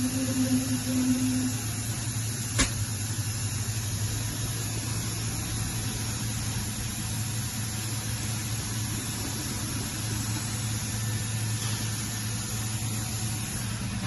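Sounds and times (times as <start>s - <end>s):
held tone: 0.0s - 1.8s
machining center humming and hissing: 0.0s - 14.0s.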